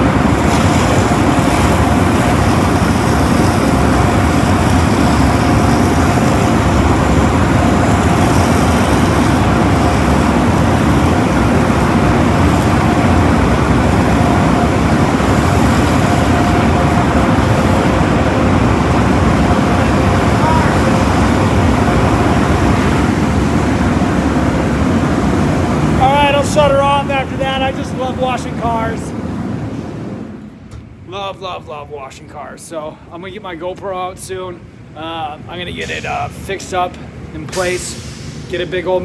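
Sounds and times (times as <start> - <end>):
car wash equipment rushing: 0.0 - 29.8
faint constant hum: 0.0 - 39.0.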